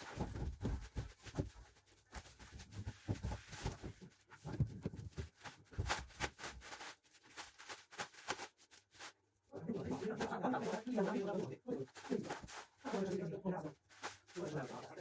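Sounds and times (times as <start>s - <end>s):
handling thumps and knocks: 0.0s - 6.4s
packaging rustling: 0.0s - 9.2s, 10.0s - 13.2s, 13.8s - 15.0s.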